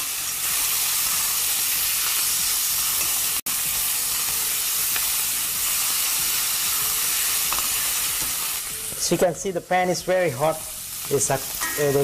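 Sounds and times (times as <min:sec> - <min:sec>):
prawns sizzling in hot oil: 0:00.0 - 0:12.0.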